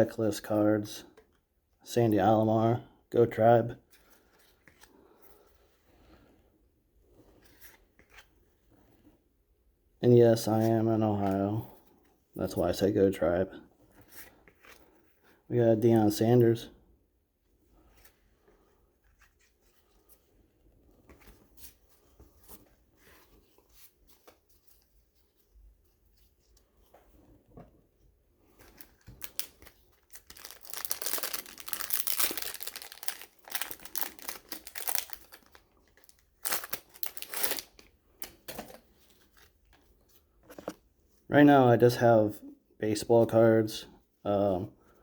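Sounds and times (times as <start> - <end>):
wrapper tearing and crinkling: 28.7 - 38.4.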